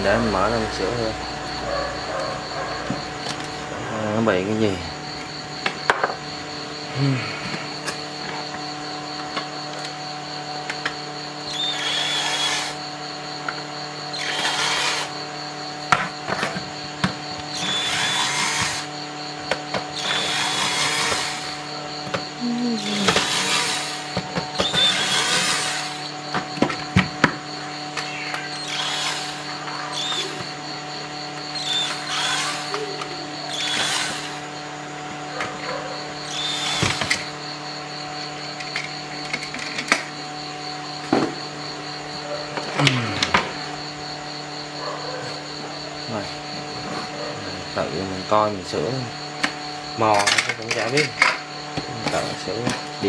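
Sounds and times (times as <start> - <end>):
electric screwdriver running: 11.4 - 12.8, 14.1 - 15.2, 17.5 - 19.0, 19.9 - 21.7, 22.8 - 26.1, 28.0 - 30.5, 31.5 - 34.4, 36.2 - 37.3.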